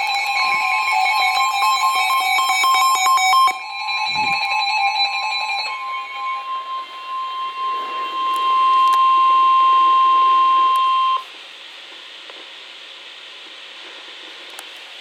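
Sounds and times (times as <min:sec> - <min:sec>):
loud high-pitched alert beep: 0:02.4 - 0:11.2
radio static hiss: 0:03.8 - 0:15.0.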